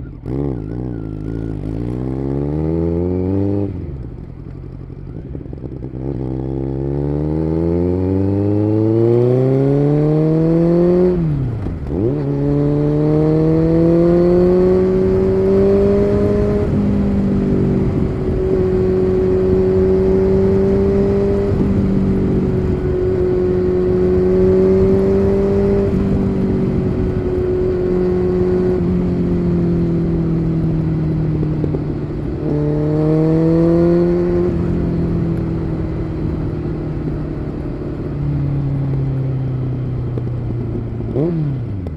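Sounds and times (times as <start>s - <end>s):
motorcycle engine accelerating: 0.0s - 41.9s.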